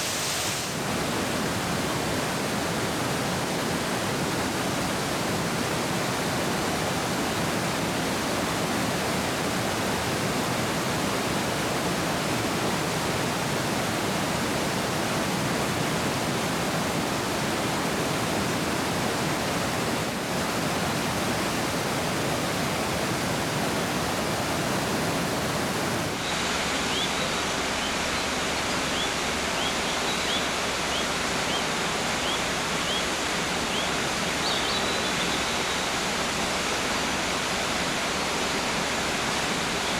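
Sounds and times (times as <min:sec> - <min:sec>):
mountain stream rushing: 0:00.0 - 0:39.9
songbird chirping: 0:26.2 - 0:33.1, 0:33.7 - 0:35.8.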